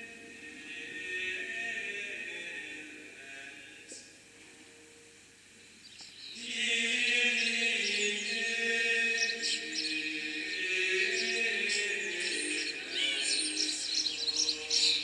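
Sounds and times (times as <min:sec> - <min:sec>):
male voices chanting: 0:06.4 - 0:15.0.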